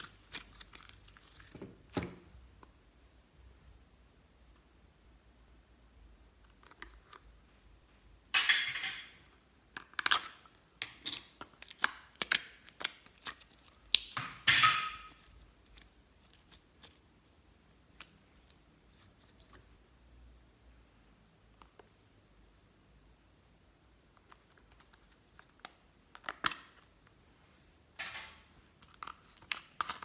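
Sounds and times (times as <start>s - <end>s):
slime clicks and crackles: 9.8s - 14.2s, 28.8s - 30.0s.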